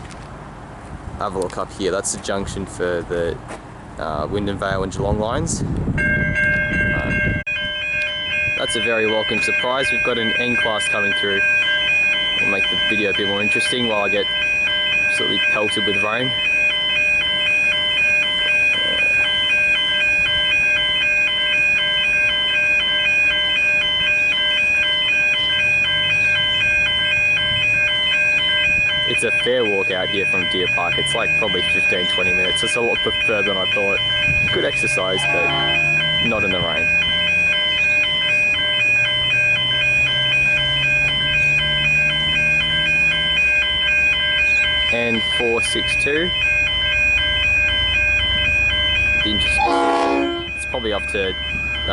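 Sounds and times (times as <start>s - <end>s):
level crossing bells ringing: 6.0s - 51.9s
steady low drone: 33.9s - 36.9s.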